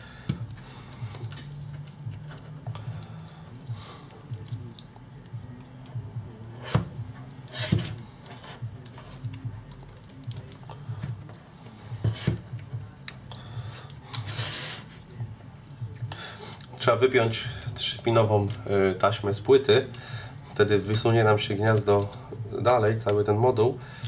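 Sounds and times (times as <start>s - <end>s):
tools rubbing and scraping plastic: 0.4s - 2.8s, 4.0s - 12.7s, 13.8s - 15.8s.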